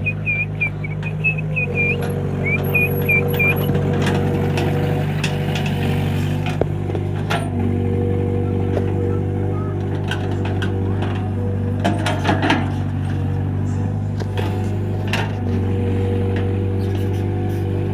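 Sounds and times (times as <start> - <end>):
short high squeaks: 0.0 - 3.8, 16.8 - 17.7
excavator diesel engine running: 0.0 - 17.9.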